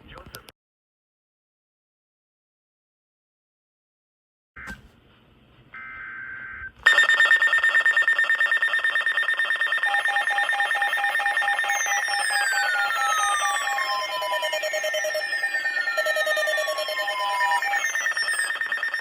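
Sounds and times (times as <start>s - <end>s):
buzzing data bursts: 6.9s - 19.0s
fast-pulsing electronic alarm: 6.9s - 19.0s
slow beeping: 6.9s - 19.0s
falling sweeping tones: 11.2s - 19.0s.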